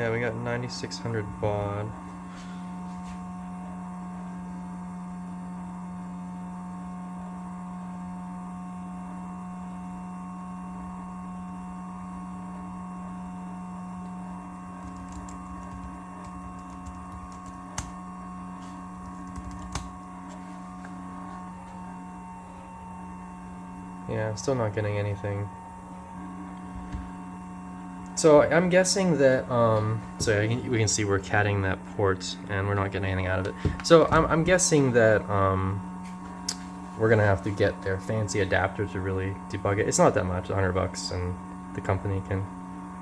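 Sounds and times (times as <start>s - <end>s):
electrical hum: 0.0s - 43.0s
computer keyboard clicks: 14.8s - 15.9s, 19.2s - 19.9s.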